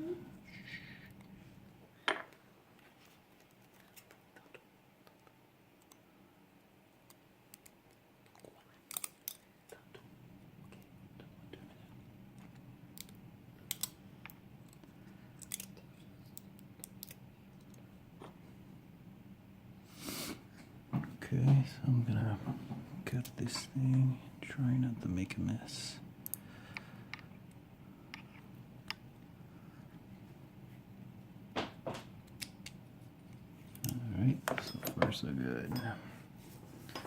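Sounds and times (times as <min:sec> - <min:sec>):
faint steady hum: 0:00.0 - 0:37.0
lock picking tools clicking: 0:13.0 - 0:14.0.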